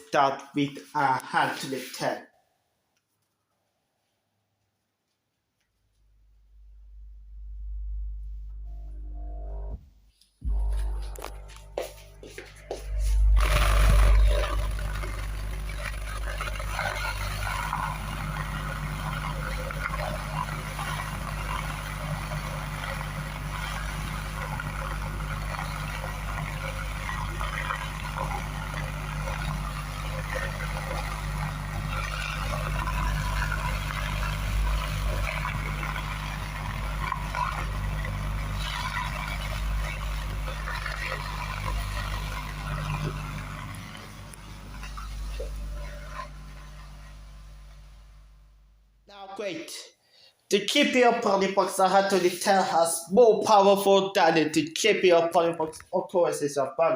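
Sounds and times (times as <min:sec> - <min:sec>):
speaker crackle: 0:05.0 - 0:56.9
deep bass test tone: 0:06.2 - 0:49.1.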